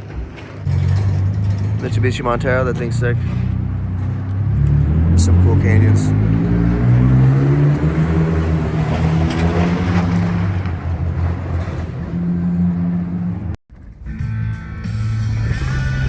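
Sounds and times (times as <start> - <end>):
pickup truck engine running: 0.0 - 6.2
driving noise: 0.0 - 16.0.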